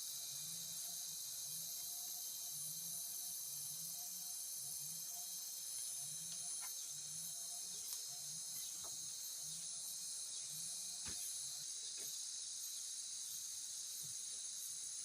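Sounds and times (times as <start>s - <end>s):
insects chirring: 0.0s - 15.0s.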